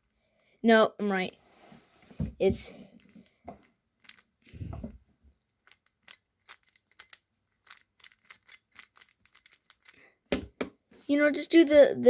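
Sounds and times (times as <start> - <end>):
puzzle cube plastic clicks: 2.8 - 4.6, 5.4 - 10.0.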